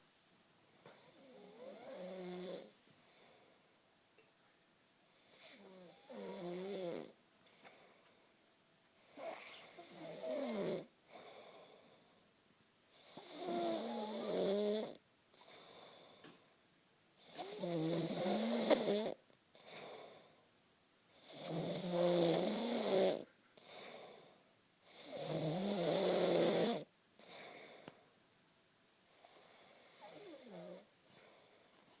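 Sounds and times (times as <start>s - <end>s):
soft breathing: 2.6s - 5.7s, 7.4s - 9.9s, 15.4s - 16.6s, 29.1s - 32.0s
loud rattling snores: 5.4s - 7.1s, 9.1s - 10.9s, 13.0s - 15.0s, 17.3s - 19.2s, 21.2s - 23.2s, 24.9s - 26.9s.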